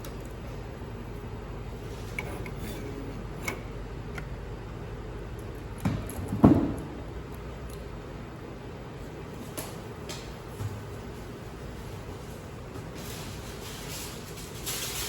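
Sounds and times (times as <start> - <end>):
soldering machine humming: 0.0 - 6.0.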